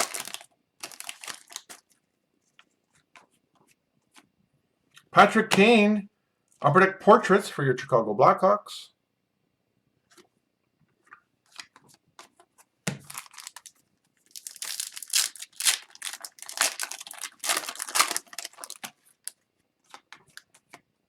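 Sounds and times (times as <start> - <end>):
foil wrapper tearing and crinkling: 0.0 - 1.9, 13.0 - 20.4.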